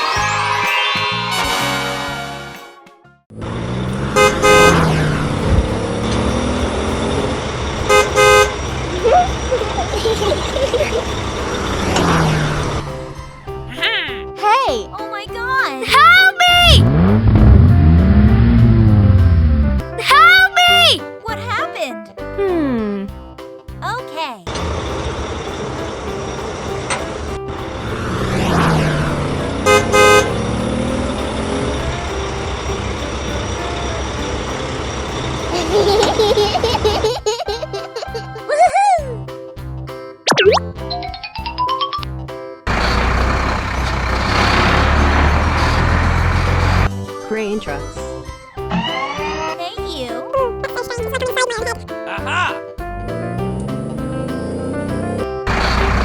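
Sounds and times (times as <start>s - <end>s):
engine rumble: 3.3s - 13.8s, 16.6s - 19.9s, 24.5s - 37.2s, 42.7s - 46.9s, 52.8s - 56.0s
cartoon vehicle horn toots: 4.0s - 5.2s, 7.9s - 8.7s, 29.6s - 30.8s
cartoon engine running: 42.7s - 46.9s, 48.7s - 49.8s, 53.2s - 56.0s.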